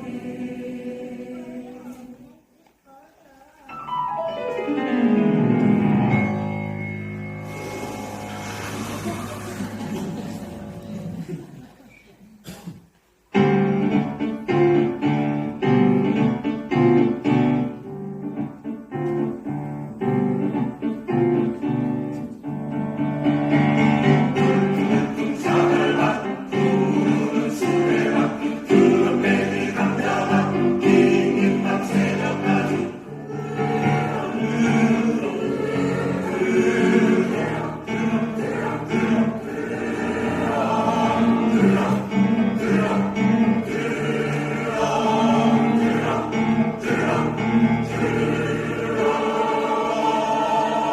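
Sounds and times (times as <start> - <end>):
choir singing: 0.0 - 2.5, 3.8 - 11.7, 22.8 - 50.9
piano accompaniment: 3.7 - 11.3, 13.3 - 50.9.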